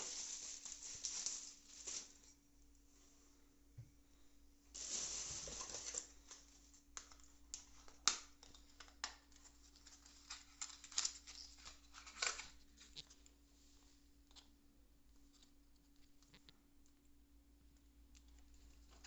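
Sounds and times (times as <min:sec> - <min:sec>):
packaging rustling and tearing: 0:00.0 - 0:02.3, 0:04.8 - 0:06.1, 0:09.3 - 0:13.1.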